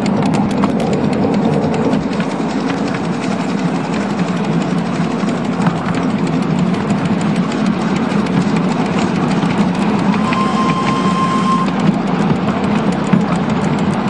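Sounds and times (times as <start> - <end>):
steam locomotive rumbling: 0.0 - 14.0
wheels clicking on rails: 0.0 - 14.0
steady high note: 9.8 - 11.8.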